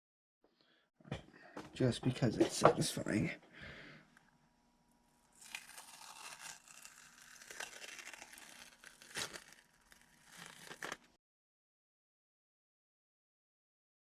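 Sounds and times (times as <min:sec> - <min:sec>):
masking tape peeling and crinkling: 0:05.3 - 0:11.2.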